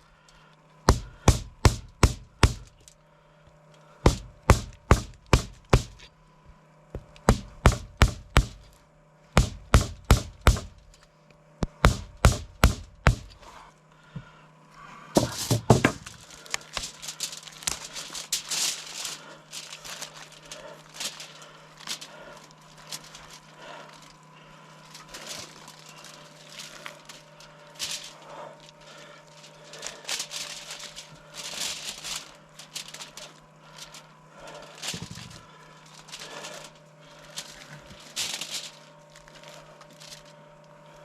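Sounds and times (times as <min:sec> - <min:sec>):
chopping blows on carcass: 0:00.9 - 0:02.8, 0:04.0 - 0:06.0, 0:07.0 - 0:08.6, 0:09.4 - 0:10.8, 0:11.6 - 0:13.4
scraping and crackling carcass: 0:13.3 - 0:41.0.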